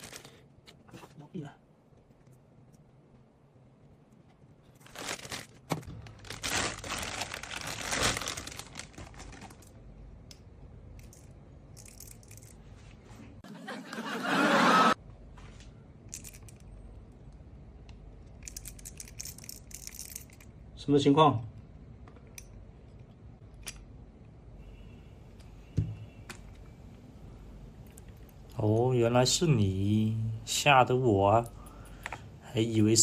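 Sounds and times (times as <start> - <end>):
packaging crinkling and tearing: 0.0 - 0.4, 4.8 - 9.8.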